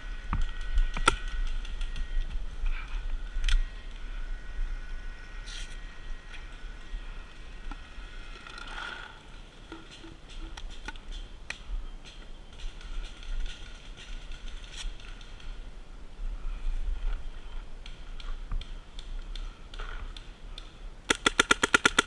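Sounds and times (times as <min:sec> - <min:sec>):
low rumble of wind: 0:00.0 - 0:22.0
paintball markers firing: 0:21.1 - 0:22.0.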